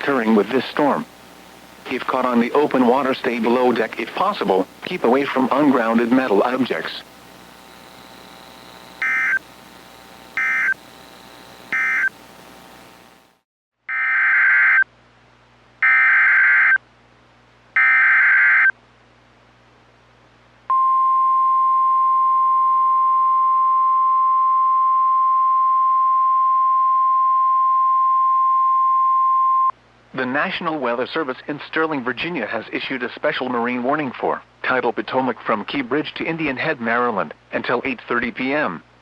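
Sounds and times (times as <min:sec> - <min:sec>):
steady warning alarm tone: 0:01.9 - 0:13.3
screeching data tone bursts: 0:04.2 - 0:12.2.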